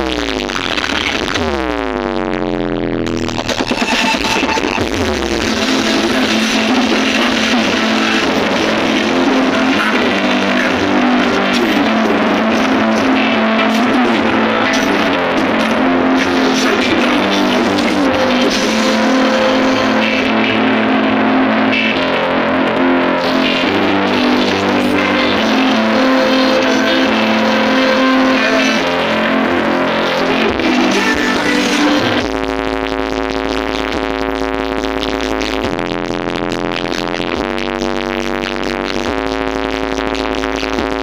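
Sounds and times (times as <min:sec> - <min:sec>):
loud guitar music: 0:03.1 - 0:32.3.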